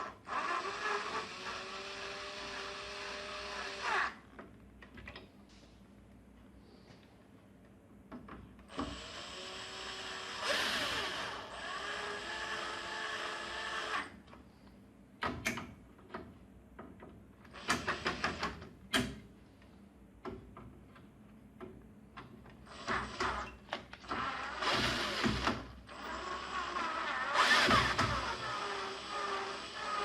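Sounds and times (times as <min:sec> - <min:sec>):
electric screwdriver driving screws: 0:22.7 - 0:30.0.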